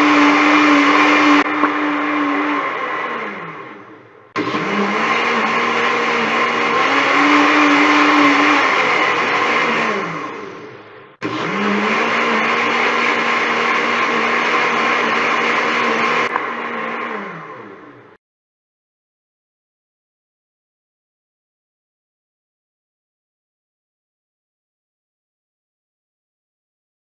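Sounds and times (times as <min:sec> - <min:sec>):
blender motor running: 0:00.0 - 0:18.2.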